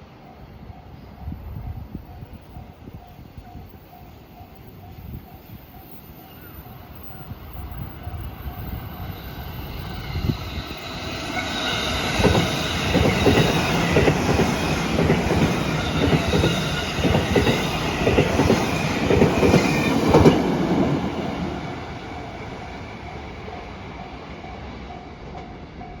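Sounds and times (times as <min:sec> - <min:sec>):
electric train passing: 0:00.0 - 0:26.0
wheels clacking over rail joints: 0:11.3 - 0:22.4.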